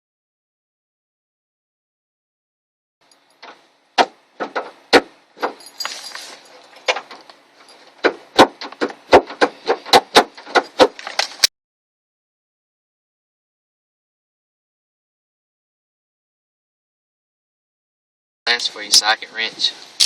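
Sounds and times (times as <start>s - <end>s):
hand tools and parts clicking: 5.4s - 11.5s.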